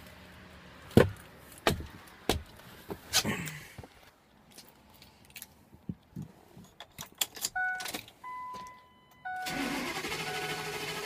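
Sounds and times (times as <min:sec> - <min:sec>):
warning chime beeping: 0:07.6 - 0:11.0
engine cranking on starter: 0:09.4 - 0:11.0.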